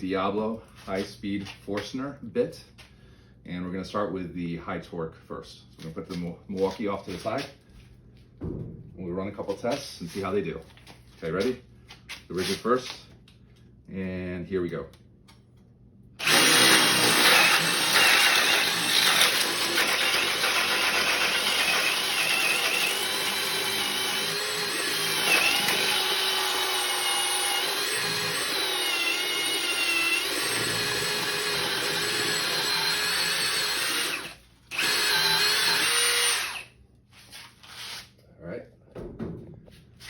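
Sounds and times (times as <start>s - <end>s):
hammer drill motor whining: 16.2s - 36.7s.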